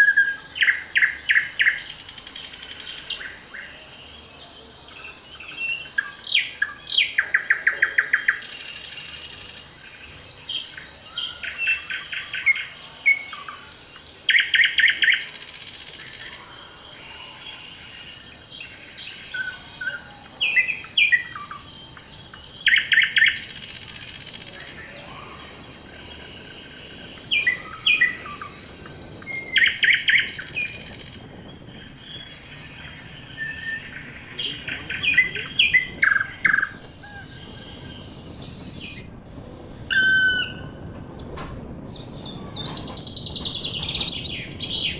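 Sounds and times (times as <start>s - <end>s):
harsh hissing bird call: 8.3s - 9.8s, 39.3s - 40.8s
bird chirps and whistles: 39.9s - 40.7s
bird trilling: 39.9s - 41.3s.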